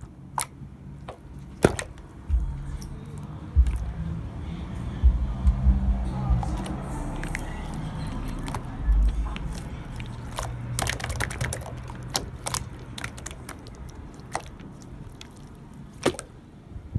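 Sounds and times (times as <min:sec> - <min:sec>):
slime squishing and crackling: 0:00.0 - 0:02.4, 0:06.4 - 0:16.4.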